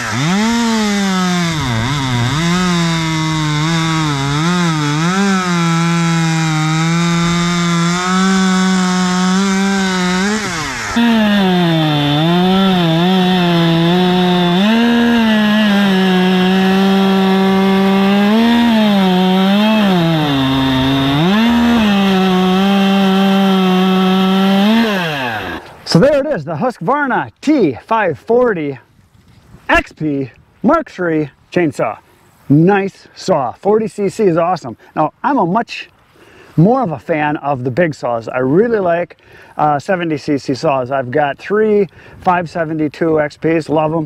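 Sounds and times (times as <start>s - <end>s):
chainsaw cutting wood: 0.0s - 25.8s.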